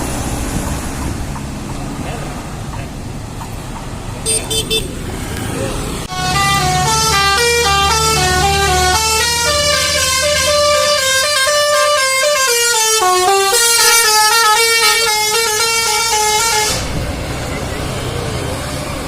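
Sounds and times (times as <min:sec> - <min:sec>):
bus engine rumble: 0:00.0 - 0:19.0
multi-tone air horn tune: 0:06.1 - 0:16.9.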